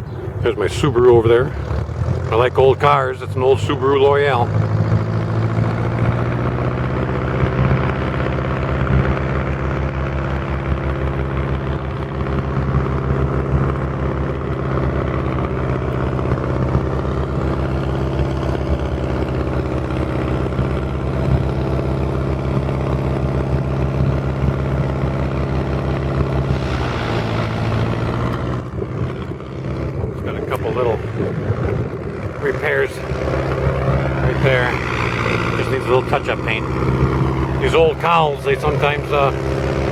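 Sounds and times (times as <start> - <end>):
engine running with pulsing beat: 0.0 - 39.9.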